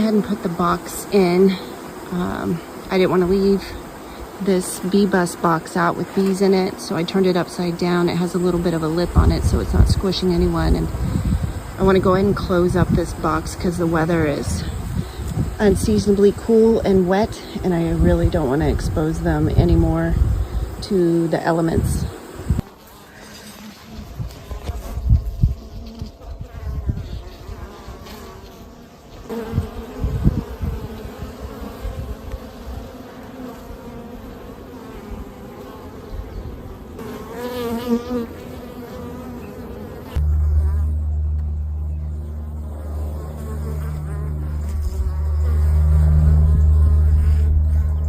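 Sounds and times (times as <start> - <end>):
bees buzzing: 0.0 - 48.0
loud steady low hum: 40.2 - 48.0.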